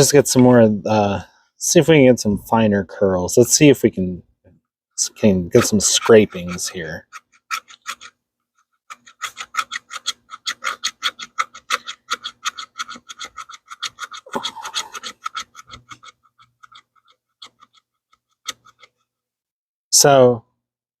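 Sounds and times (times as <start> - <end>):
knife scraping wood: 5.1 - 19.1.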